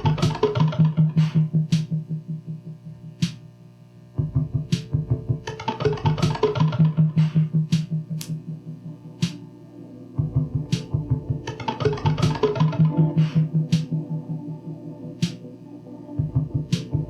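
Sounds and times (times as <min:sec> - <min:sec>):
pulsing low synth tone: 0:04.2 - 0:17.0.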